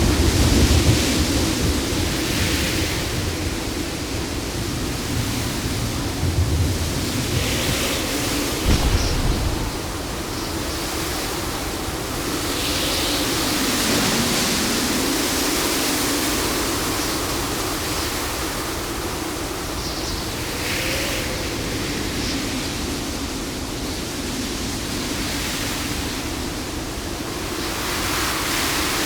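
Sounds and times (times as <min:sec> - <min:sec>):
surf and breaking waves: 0:08.7 - 0:10.6.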